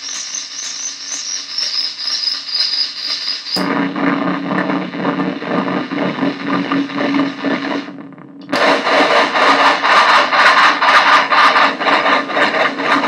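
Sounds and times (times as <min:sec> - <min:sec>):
gritty synthesizer noise drone: 0:03.6 - 0:13.0.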